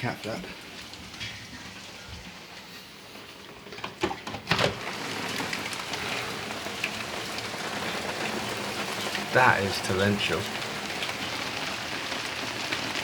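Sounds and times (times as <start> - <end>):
window opening knocks and clatters: 3.7 - 5.6
heavy rain: 4.7 - 13.0.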